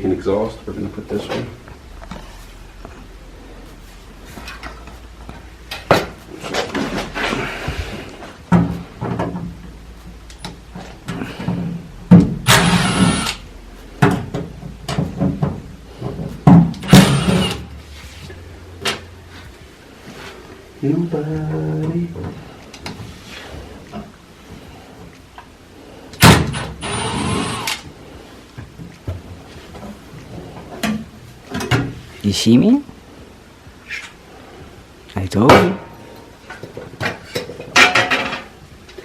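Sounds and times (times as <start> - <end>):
vent parts knocking and clicking: 4.4 - 13.4, 14.0 - 17.7.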